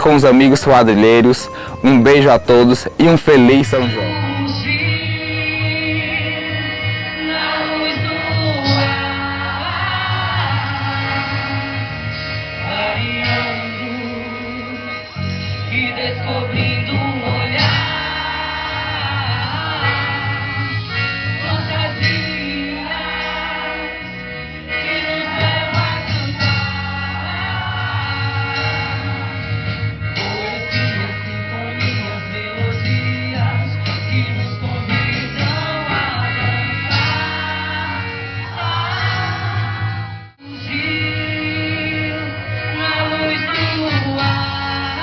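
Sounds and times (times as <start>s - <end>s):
man singing: 0.0s - 4.1s
guitar: 0.0s - 45.0s.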